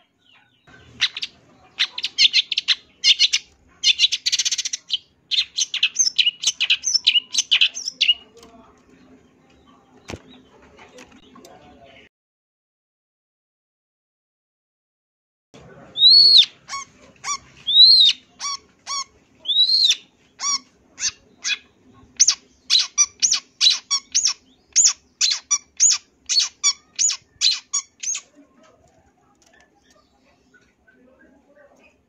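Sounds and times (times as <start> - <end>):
bird whistling song: 1.0 - 8.2, 16.0 - 16.6, 17.3 - 21.6, 22.2 - 28.3.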